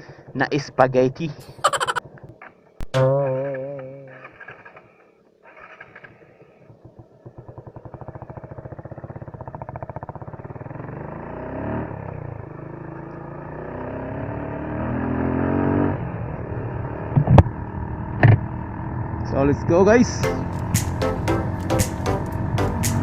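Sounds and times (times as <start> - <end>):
motorcycle engine revving: 5.5 - 23.0.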